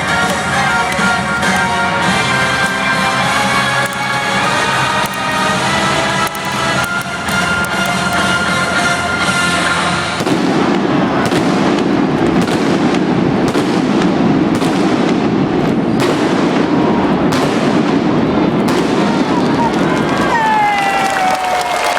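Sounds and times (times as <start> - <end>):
music: 0.0 - 10.7
crowd din: 0.0 - 21.9
fireworks popping and banging: 0.0 - 21.9.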